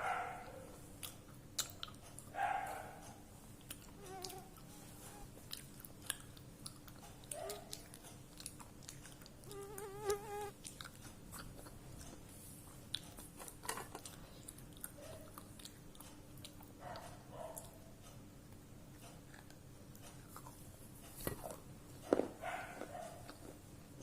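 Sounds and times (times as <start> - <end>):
person chewing crunchy clay: 3.6 - 16.7, 19.0 - 23.7.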